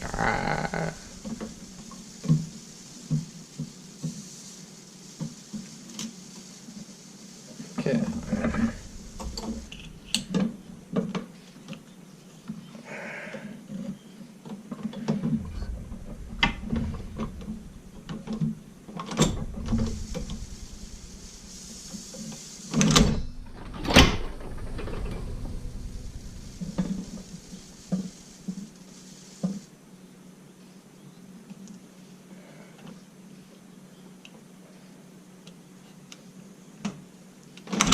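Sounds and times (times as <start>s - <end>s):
loud knocks: 15.3s - 21.5s
sewing machine clicking and clunking: 22.8s - 25.8s.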